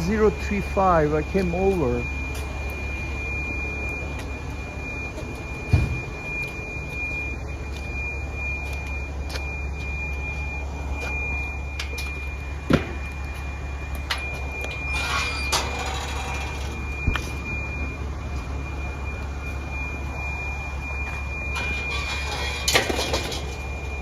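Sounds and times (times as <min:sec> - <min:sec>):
low steady hum: 0:00.0 - 0:24.0
smoke alarm high-pitched tone: 0:00.0 - 0:24.0.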